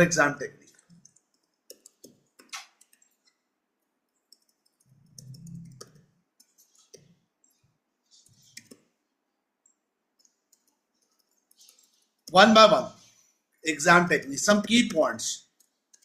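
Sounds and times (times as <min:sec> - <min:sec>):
computer mouse clicks: 0:00.7 - 0:03.5, 0:04.1 - 0:09.0, 0:09.6 - 0:12.4, 0:14.5 - 0:16.0.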